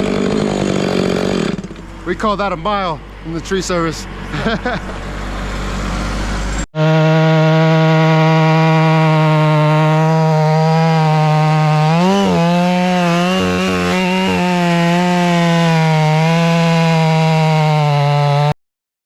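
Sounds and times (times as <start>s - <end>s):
chainsaw engine running: 0.0s - 2.8s, 6.8s - 18.5s.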